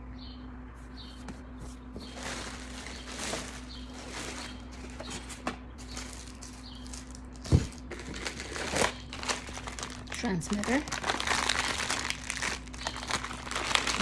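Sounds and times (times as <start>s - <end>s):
steady low hum: 0.0s - 14.0s
packaging rustling: 2.0s - 14.0s
heavy thump: 7.4s - 7.8s.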